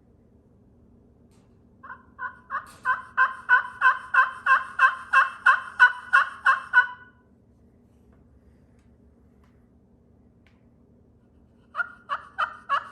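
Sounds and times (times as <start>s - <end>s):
turkey call yelps: 1.8s - 7.2s, 11.6s - 12.9s.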